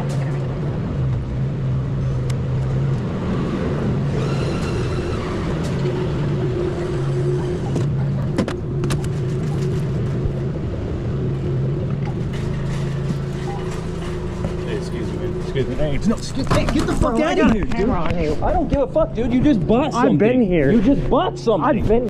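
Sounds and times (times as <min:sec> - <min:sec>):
low mechanical hum: 0:00.0 - 0:22.0
pitched drone: 0:01.6 - 0:17.7.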